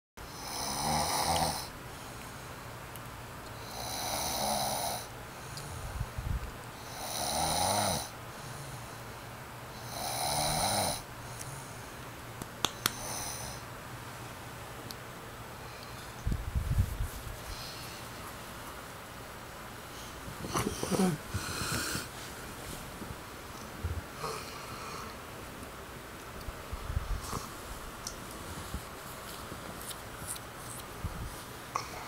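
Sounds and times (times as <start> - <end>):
man snoring: 0.3 - 1.7, 3.6 - 5.1, 6.8 - 8.2, 9.8 - 11.1, 13.0 - 13.6, 20.5 - 22.1, 24.2 - 25.2.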